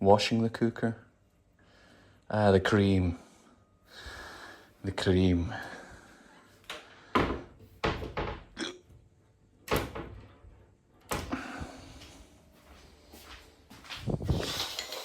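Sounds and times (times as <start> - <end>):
kitchen things knocking and clunking: 7.2 - 8.6.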